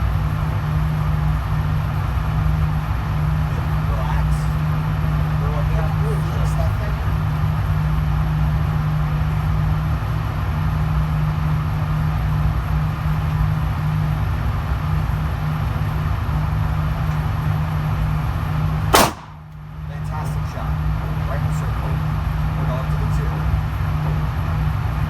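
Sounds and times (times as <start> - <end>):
steady low hum: 0.0 - 25.0
pistol shot: 19.0 - 19.6.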